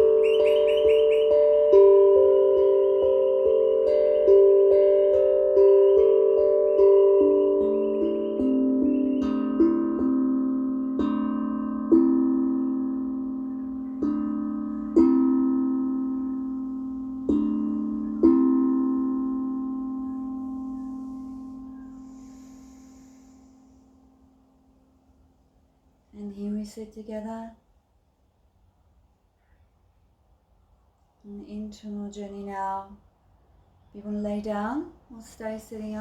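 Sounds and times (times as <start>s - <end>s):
ringing descending instrument notes: 0.0s - 11.1s.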